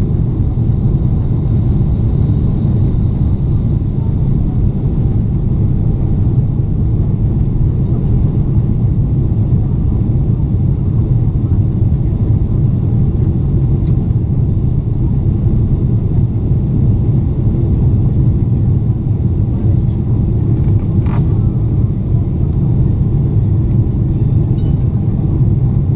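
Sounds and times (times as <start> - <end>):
airplane cabin rumble: 0.0 - 25.9.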